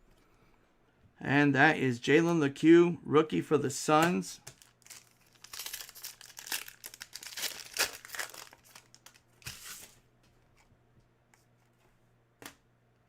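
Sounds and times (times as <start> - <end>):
plastic wrapper tearing and crinkling: 4.5 - 10.0.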